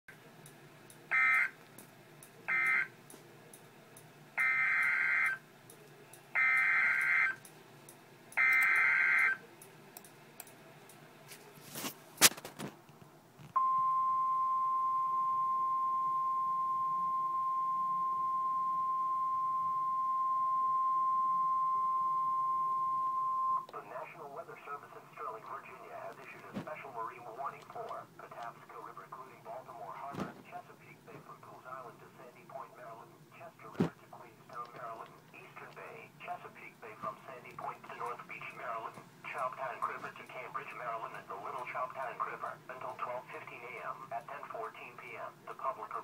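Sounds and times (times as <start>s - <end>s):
steady warning alarm tone: 1.1s - 1.6s, 2.5s - 3.0s, 4.4s - 5.4s, 6.4s - 7.5s, 8.3s - 9.5s.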